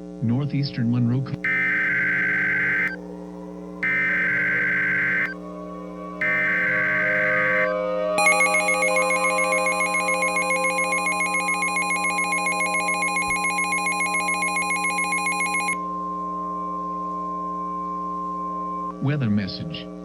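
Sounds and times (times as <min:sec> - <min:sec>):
buzzing data burst screech: 0:01.5 - 0:03.0, 0:03.8 - 0:05.3, 0:06.2 - 0:15.8
pulsing alert tone: 0:06.2 - 0:15.8.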